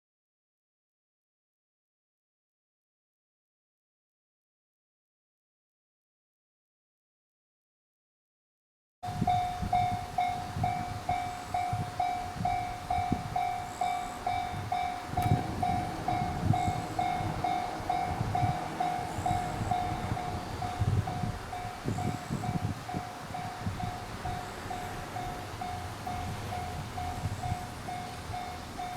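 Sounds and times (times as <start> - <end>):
level-crossing warning bell: 9.0 - 28.9
low rumble: 12.5 - 28.9.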